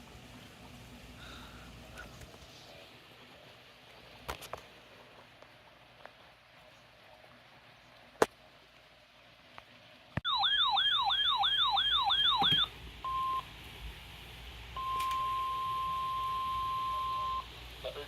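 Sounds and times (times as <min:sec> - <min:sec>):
steady single-pitch warning tone: 0:10.2 - 0:13.5, 0:14.8 - 0:17.5
warbling alarm sweeps: 0:10.3 - 0:12.7.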